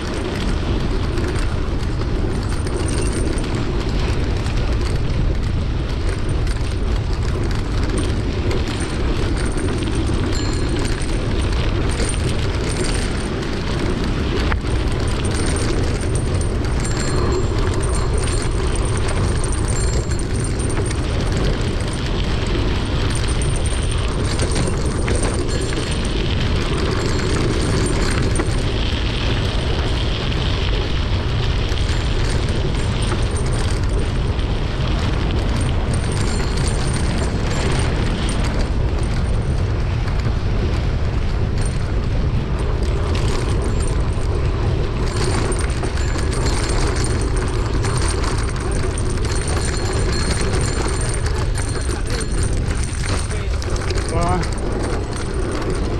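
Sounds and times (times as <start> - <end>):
small rattles: 0.0 - 55.9
tyres rolling over dirt track: 0.0 - 55.9
wind buffeting microphone: 0.0 - 55.9.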